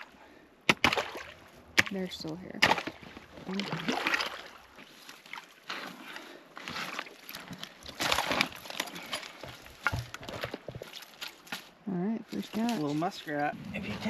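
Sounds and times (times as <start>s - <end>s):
water sloshing: 0.7s - 14.0s
ice scraping and crunching: 4.8s - 14.0s.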